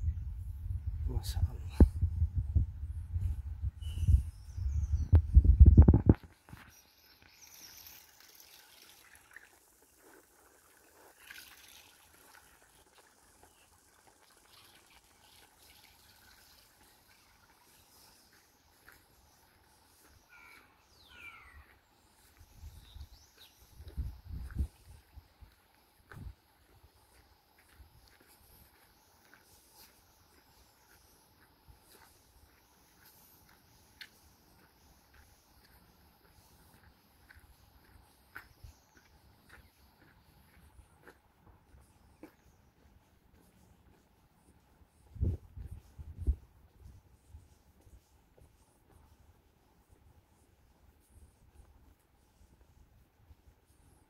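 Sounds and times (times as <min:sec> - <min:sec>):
faint background hiss: 0:06.2 - 0:54.0
faint trickling water: 0:07.0 - 0:18.8.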